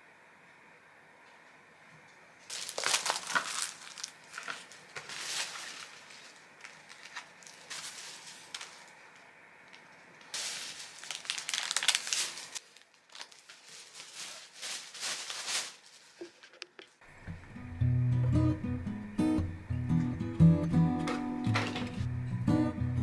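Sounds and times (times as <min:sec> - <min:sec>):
plastic scraping and crackling: 0:02.5 - 0:17.0.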